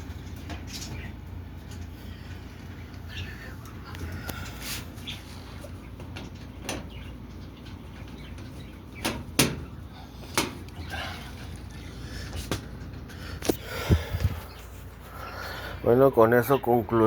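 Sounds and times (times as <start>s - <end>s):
washing machine parts knocking: 6.0s - 7.0s, 7.7s - 10.8s.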